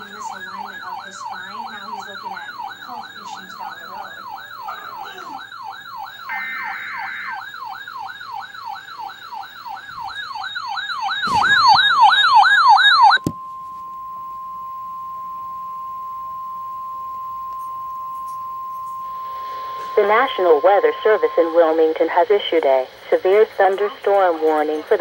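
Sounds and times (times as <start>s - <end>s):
electronic siren sweeping: 0.0s - 25.0s
steady alert tone: 0.7s - 7.6s.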